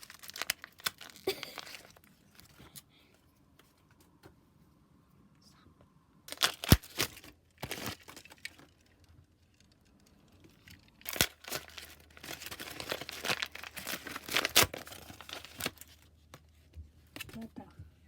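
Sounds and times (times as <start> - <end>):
packaging crinkling: 0.0 - 2.6, 6.3 - 9.7, 10.5 - 16.1.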